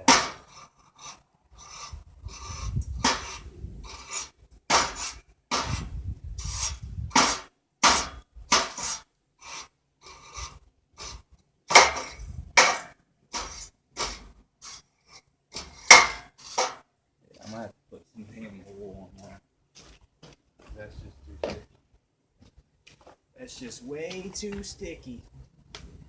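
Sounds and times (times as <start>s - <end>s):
metal scraping by hand: 0.0s - 16.9s.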